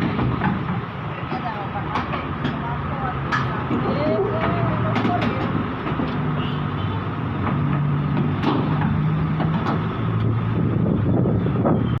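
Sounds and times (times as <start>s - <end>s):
sharp metallic knocks: 7.4s - 9.9s.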